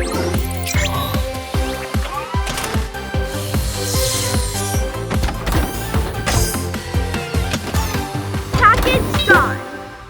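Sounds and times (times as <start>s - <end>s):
upbeat electronic music: 0.0s - 10.0s
hissing sweep: 3.0s - 8.6s.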